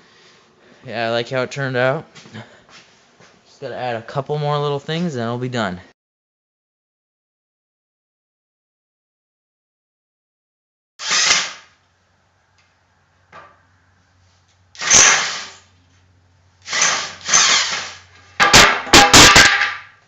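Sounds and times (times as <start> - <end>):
sharp knocks: 18.4 - 19.9.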